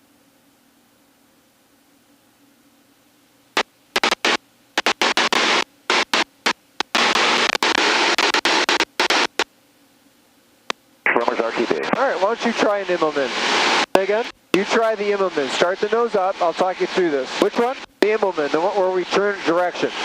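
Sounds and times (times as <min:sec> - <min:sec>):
faint steady hum: 0:00.0 - 0:20.0
intercom rushing noise bursts: 0:04.0 - 0:09.4.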